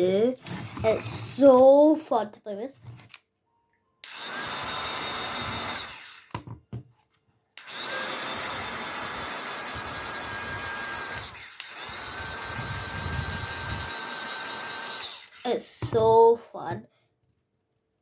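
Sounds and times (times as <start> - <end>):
toy motor whirring whine: 4.0 - 6.4, 7.6 - 16.2.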